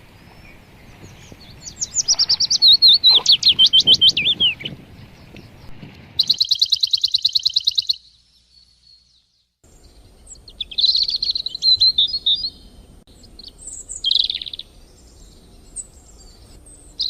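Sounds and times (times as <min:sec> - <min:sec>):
fast bird trill: 0:00.2 - 0:08.2, 0:10.3 - 0:14.8
bird whistling notes: 0:00.3 - 0:09.1, 0:09.8 - 0:16.4.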